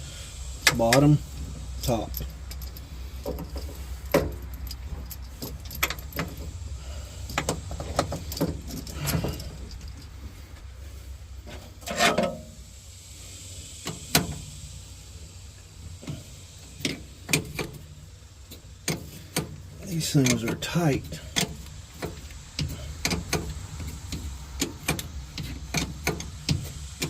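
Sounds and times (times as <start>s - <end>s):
low steady hum: 0.0s - 27.0s
metallic clicks and knocks: 1.8s - 6.6s, 21.3s - 26.8s.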